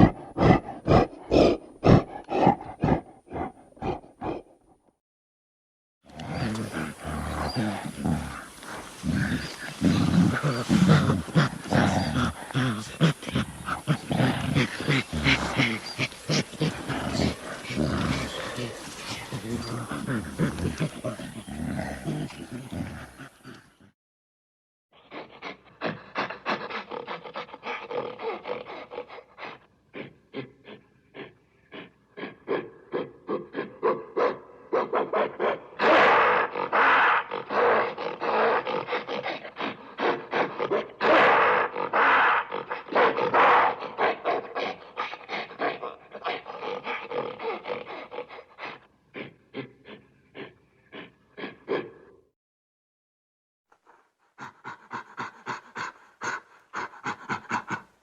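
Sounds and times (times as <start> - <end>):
gorilla grunting hoots: 6.1 - 23.7.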